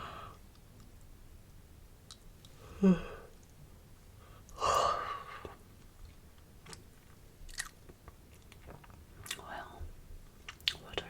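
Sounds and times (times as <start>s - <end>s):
wet mouth clicks: 10.5s - 11.0s.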